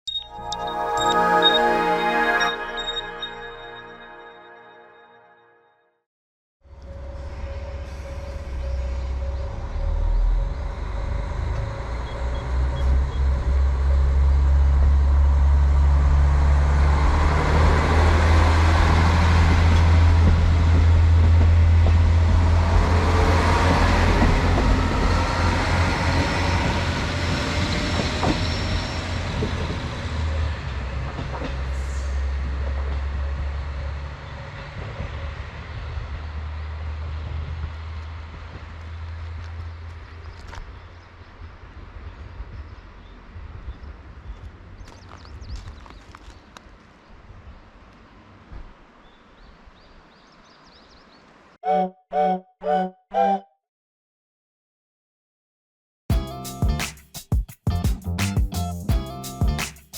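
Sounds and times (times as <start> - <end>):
diesel railcar engine rumble: 6.7 - 45.5.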